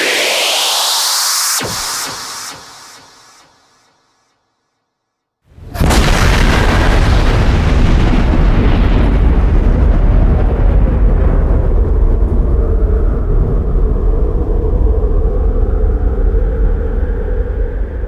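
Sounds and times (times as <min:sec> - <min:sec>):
spaceship blast roar: 0:05.6 - 0:18.0.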